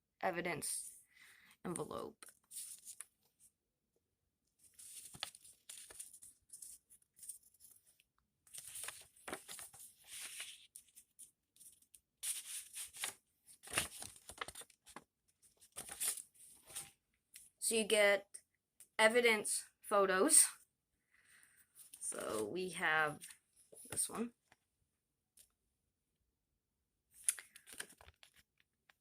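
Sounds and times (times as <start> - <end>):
paper envelope rustling: 2.4 - 3.1, 4.6 - 16.9, 27.4 - 28.6.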